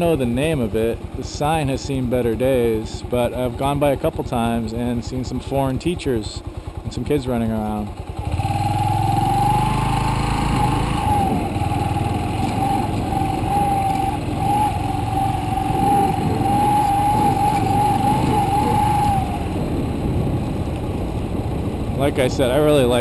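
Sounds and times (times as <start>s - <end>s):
motorcycle engine running: 0.0s - 23.0s
steady wavering whine: 9.4s - 20.5s.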